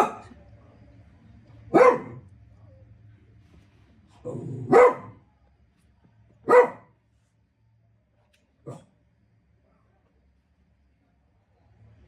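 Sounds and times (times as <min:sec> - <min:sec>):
dog barking: 0:00.0 - 0:00.3, 0:01.7 - 0:02.2, 0:04.6 - 0:05.2, 0:06.4 - 0:06.9, 0:08.7 - 0:08.9.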